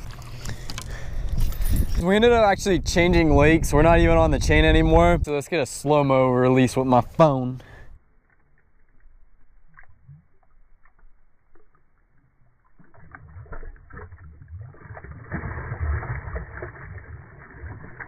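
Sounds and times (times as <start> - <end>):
low water sloshing: 8.3 - 18.0.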